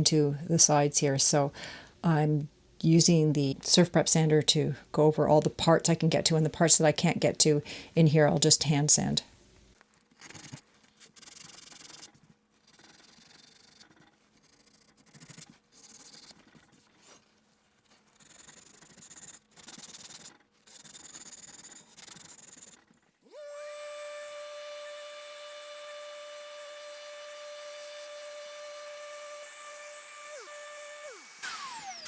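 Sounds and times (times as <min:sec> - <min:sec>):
sandpaper rubbing on wood: 0:10.2 - 0:22.9
power tool whining and humming: 0:20.8 - 0:32.0.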